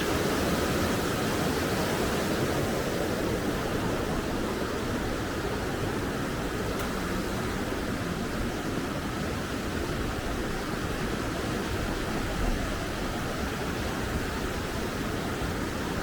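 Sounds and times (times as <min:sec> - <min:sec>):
river rushing water roar: 0:00.0 - 0:16.0.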